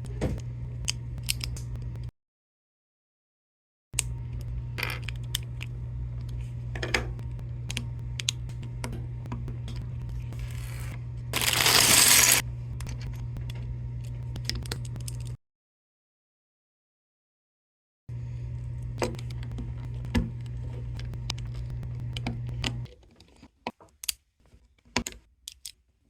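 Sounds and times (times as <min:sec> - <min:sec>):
steady low hum: 0:00.0 - 0:02.1, 0:04.0 - 0:15.4, 0:18.1 - 0:22.9
plastic bricks clicking: 0:25.0 - 0:25.8.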